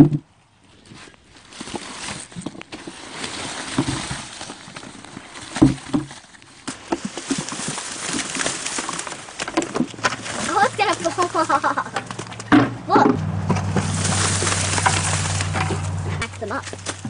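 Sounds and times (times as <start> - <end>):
dry corn stalks rustling: 0.5 - 17.0
dull thumps: 5.5 - 17.0.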